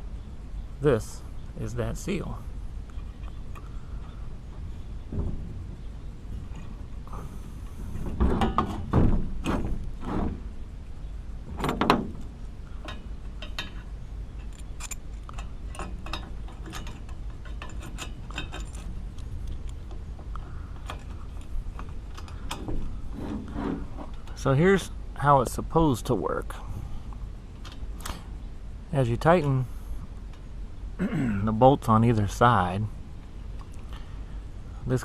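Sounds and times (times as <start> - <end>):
metal exhaust parts clinking: 1.6 - 10.7, 11.5 - 26.1.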